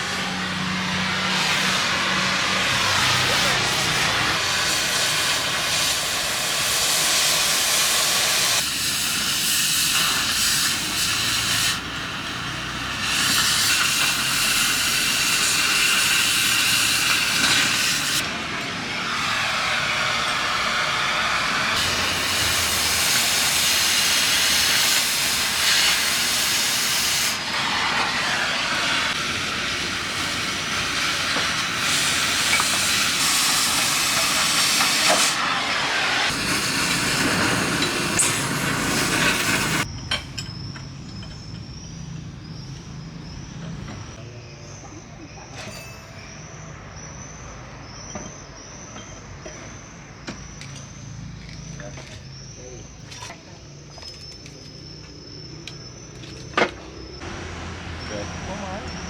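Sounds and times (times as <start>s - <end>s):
cutting torch hissing: 0.0s - 39.9s, 57.1s - 59.0s.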